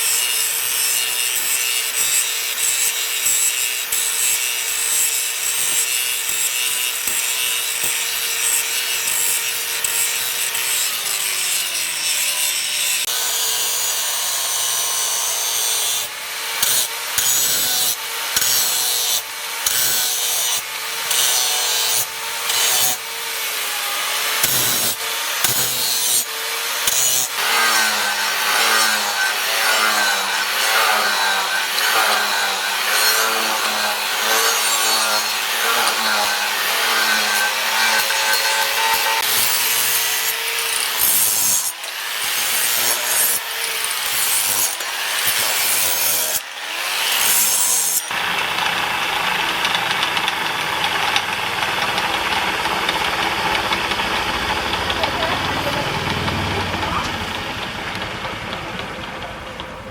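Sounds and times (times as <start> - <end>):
hand tool sawing wood: 0.0 - 59.9.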